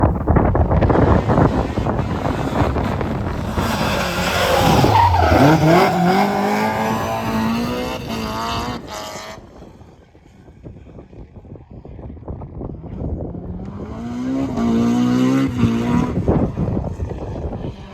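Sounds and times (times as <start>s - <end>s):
tyre and road noise: 0.0s - 10.0s
rally car engine accelerating: 0.3s - 9.7s.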